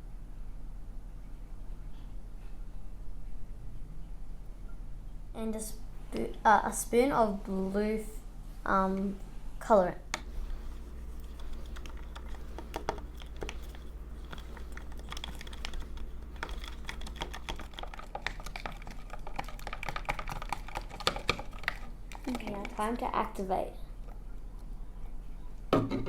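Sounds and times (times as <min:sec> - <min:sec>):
low hum: 0:10.1 - 0:20.0
plastic stirrer tapping cup: 0:10.2 - 0:23.0.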